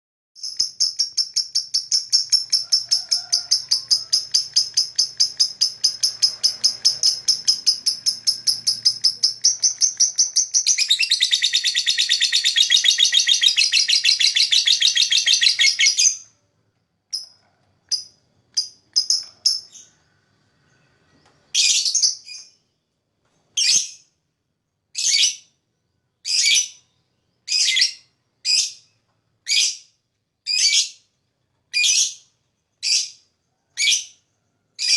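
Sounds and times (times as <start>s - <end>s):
fast trill of high chirps: 0.4s - 16.3s
lovebird chirping: 0.4s - 16.4s, 17.1s - 22.9s.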